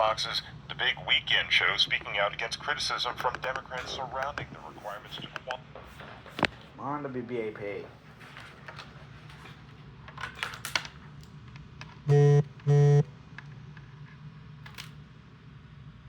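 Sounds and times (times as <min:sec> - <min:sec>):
buzzy electronic beeps: 0:12.1 - 0:13.0
low steady hum: 0:12.1 - 0:14.4.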